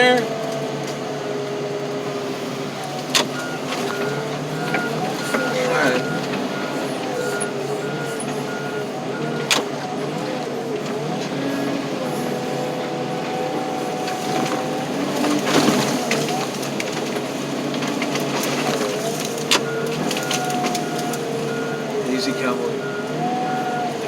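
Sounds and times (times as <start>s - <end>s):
tractor engine under load: 0.0s - 24.0s
cracking and clattering debris: 2.9s - 24.0s
backup alarm beeping: 3.2s - 10.2s, 18.8s - 24.0s
brush cracking: 12.5s - 22.4s.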